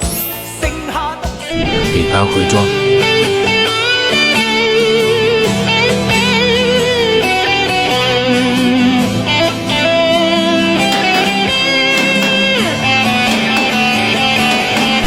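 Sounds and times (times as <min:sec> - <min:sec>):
electric guitar melody: 0:01.5 - 0:15.0.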